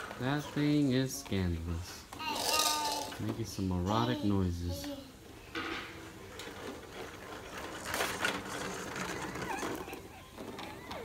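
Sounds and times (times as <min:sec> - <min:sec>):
baby squeaky glides: 0:07.8 - 0:11.0.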